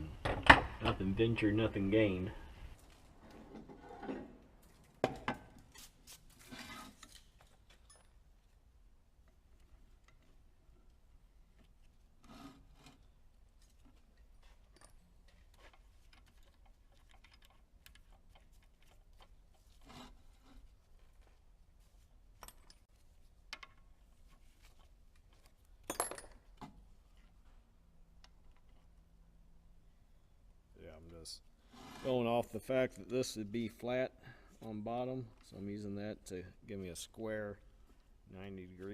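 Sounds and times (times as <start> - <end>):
metal parts and tools clinking: 6.5 - 8.3, 22.3 - 22.9, 25.3 - 26.6.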